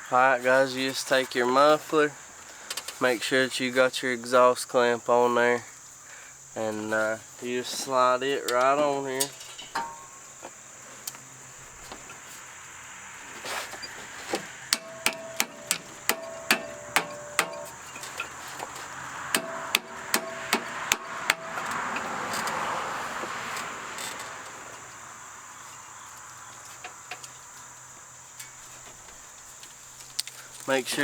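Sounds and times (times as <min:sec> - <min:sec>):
metallic taps on muffler: 0:08.4 - 0:12.4, 0:14.3 - 0:25.1.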